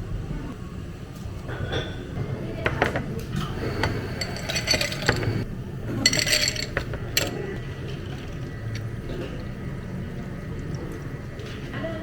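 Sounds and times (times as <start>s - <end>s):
utensils clinking and rattling: 3.4s - 8.4s.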